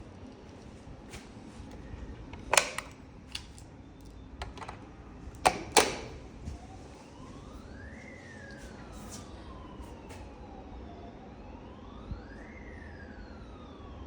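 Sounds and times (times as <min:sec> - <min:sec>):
sharp mechanical clicks and knocks: 0:02.4 - 0:03.5, 0:05.4 - 0:06.2
fire alarm wail: 0:05.5 - 0:14.0.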